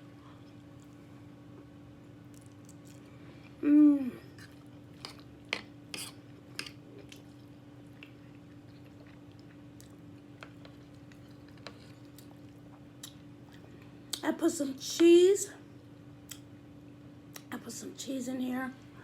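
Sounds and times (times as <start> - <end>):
short hummed vocal sound: 3.5 - 4.5
chewing with lip smacks: 6.0 - 14.2.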